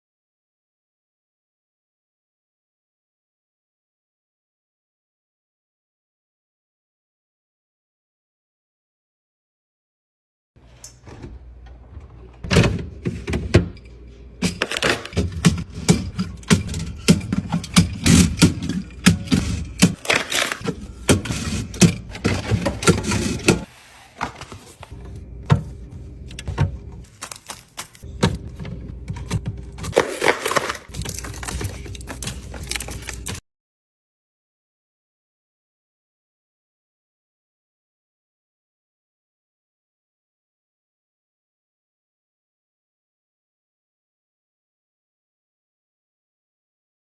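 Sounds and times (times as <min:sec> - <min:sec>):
containers and packaging handled: 0:14.5 - 0:33.4.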